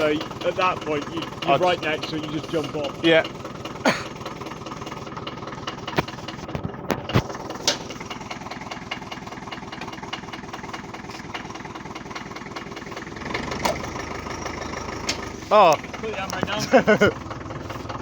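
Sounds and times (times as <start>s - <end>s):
engine chugging: 0.0s - 18.0s
sharp knocks and rattles: 0.0s - 18.0s.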